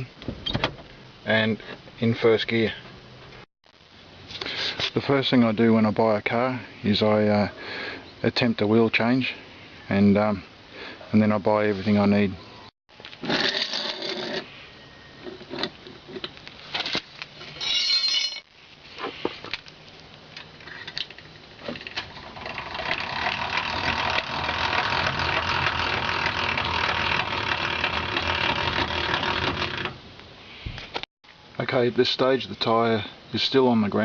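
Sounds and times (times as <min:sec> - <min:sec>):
jack screw grinding whirr: 0:22.0 - 0:30.0.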